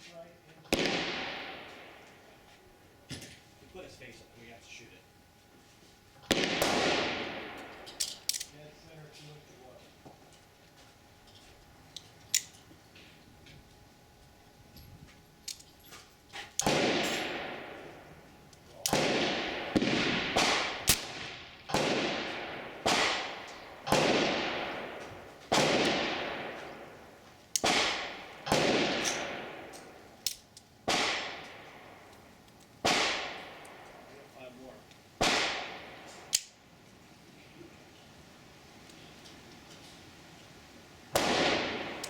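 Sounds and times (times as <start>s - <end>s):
revolver cocking clicks: 7.5s - 8.6s, 11.9s - 12.7s, 20.8s - 21.9s, 27.4s - 30.7s, 34.9s - 36.6s.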